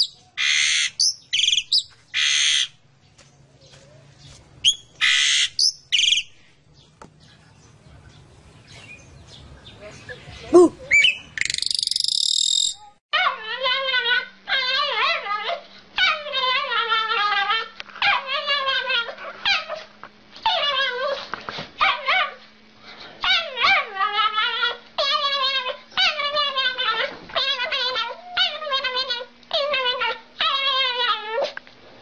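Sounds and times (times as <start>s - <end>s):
dog whining: 10.6s - 10.8s.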